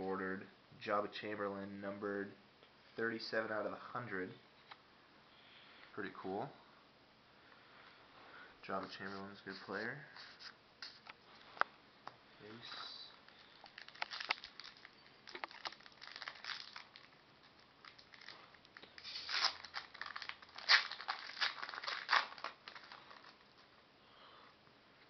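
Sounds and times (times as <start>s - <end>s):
foil wrapper crinkling and tearing: 13.3s - 23.6s.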